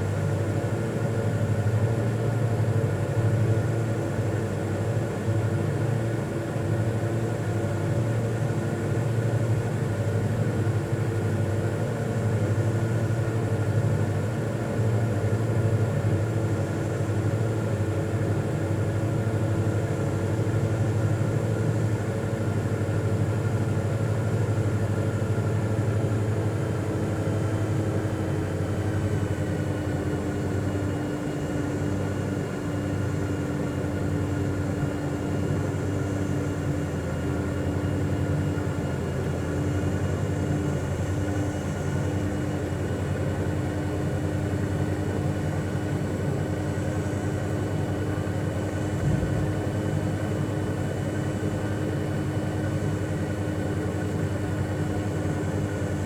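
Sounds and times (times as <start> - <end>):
steady mechanical droning hum: 15.8 - 56.0.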